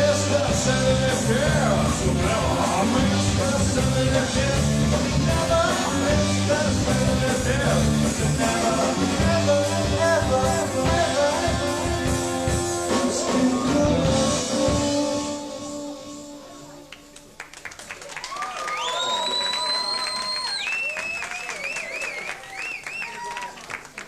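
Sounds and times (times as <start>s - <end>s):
rock band playing: 0.0s - 16.2s
person singing: 0.0s - 17.3s.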